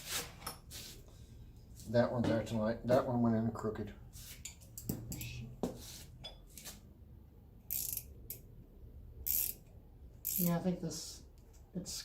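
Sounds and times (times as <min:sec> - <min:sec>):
metal tool clicks and scrapes: 0:09.3 - 0:09.6, 0:10.2 - 0:10.6.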